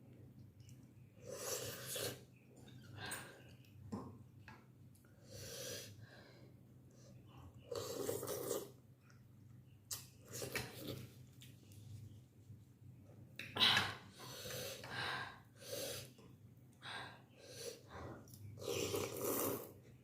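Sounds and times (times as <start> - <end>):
slurping noodles and broth: 1.2 - 2.3, 7.7 - 8.8, 18.5 - 19.8.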